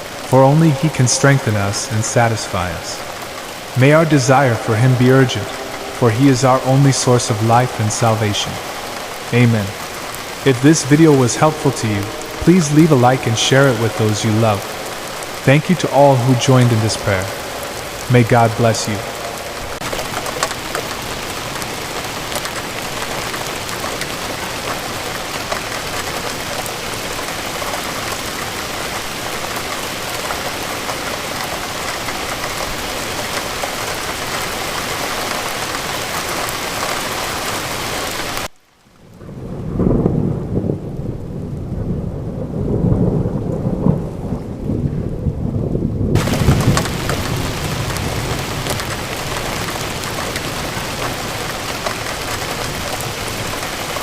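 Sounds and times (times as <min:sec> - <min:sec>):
steady rainfall: 0:00.0 - 0:54.0
rolling thunder rumble: 0:39.0 - 0:54.0.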